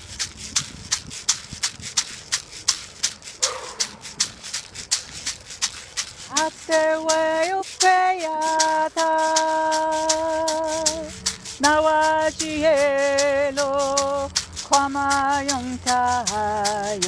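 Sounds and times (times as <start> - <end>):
hand rattle shaken: 0.0 - 17.0
woman singing a chant: 6.3 - 17.0.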